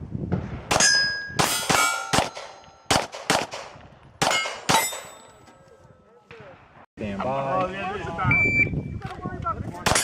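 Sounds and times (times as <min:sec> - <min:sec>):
steel plate ringing clang: 0:00.7 - 0:02.9, 0:04.3 - 0:05.4
pistol shots: 0:00.7 - 0:05.2.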